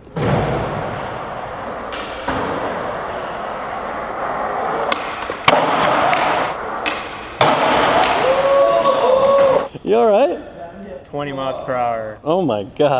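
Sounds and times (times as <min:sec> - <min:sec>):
skateboard clack: 0:00.0 - 0:09.7
skateboard wheels rolling on concrete: 0:00.0 - 0:09.7.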